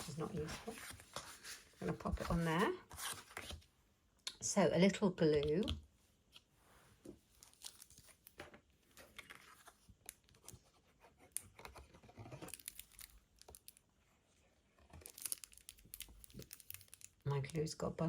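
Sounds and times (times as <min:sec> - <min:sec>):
cardstock rustling and crinkling: 0:00.0 - 0:03.7, 0:07.1 - 0:13.9, 0:14.6 - 0:17.7.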